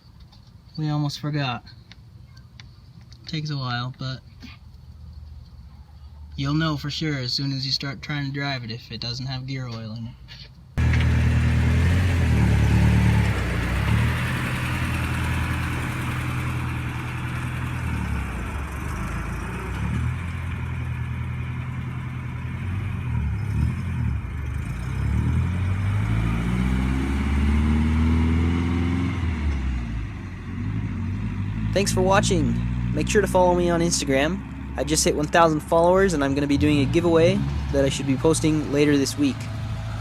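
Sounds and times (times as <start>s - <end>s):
car engine running: 10.8s - 40.0s.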